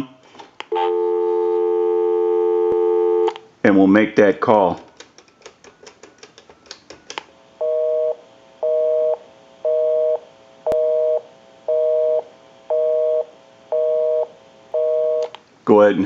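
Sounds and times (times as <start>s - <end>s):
telephone busy signal: 0.7s - 3.3s, 7.6s - 13.2s, 13.8s - 15.3s
clicks: 15.2s - 15.5s.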